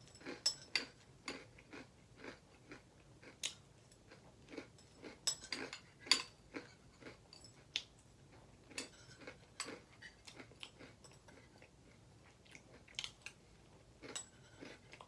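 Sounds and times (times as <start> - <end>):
spoon clinking against bowl: 0.0 - 1.4, 4.8 - 6.4, 8.8 - 9.8
crunchy chewing: 0.2 - 15.0.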